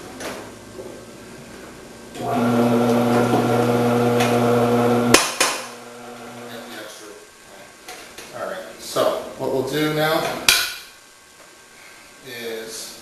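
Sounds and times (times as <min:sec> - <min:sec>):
electric motor humming: 0:02.2 - 0:06.8.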